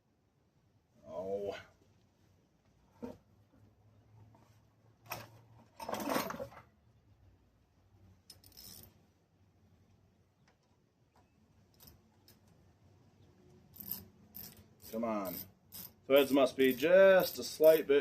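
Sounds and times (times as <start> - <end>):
small metal parts clinking: 8.2 - 9.0, 11.7 - 12.5, 13.7 - 18.0.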